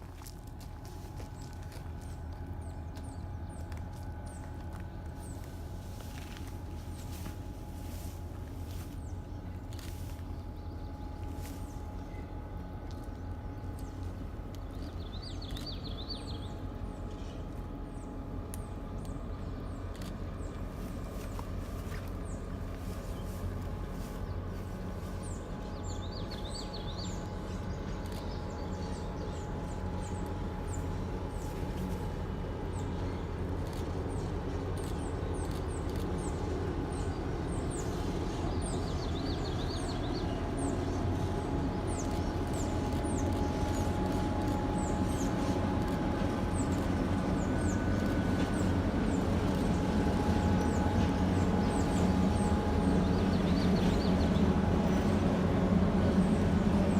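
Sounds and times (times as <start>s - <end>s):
train rumble: 0.0s - 56.9s
birds chirping: 19.3s - 56.9s.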